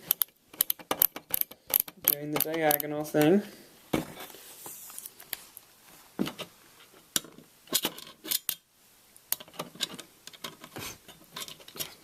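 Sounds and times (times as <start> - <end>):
screwdriver scraping: 0.0 - 2.9
metallic clicks of screws: 0.0 - 3.3.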